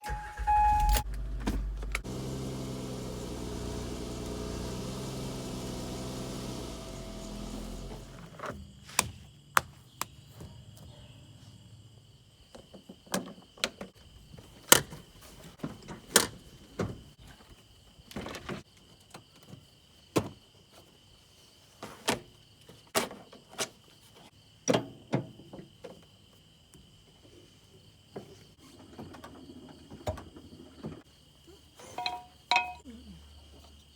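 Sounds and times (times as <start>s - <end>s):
motor running: 1.2s - 8.3s.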